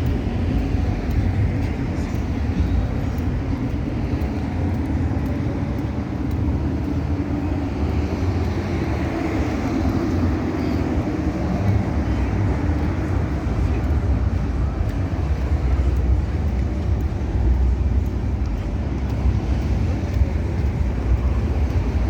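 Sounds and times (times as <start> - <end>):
traffic rumble: 0.0 - 22.0.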